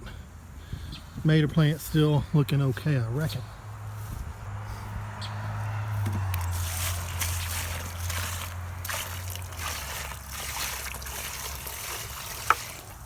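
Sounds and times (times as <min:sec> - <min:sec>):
water sloshing and splashing: 0:06.2 - 0:13.0.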